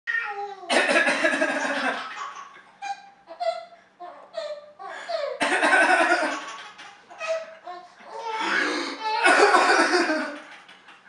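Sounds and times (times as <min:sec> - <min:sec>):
coughing mixed with laughter: 0:00.7 - 0:02.0, 0:05.4 - 0:06.4, 0:08.4 - 0:10.6.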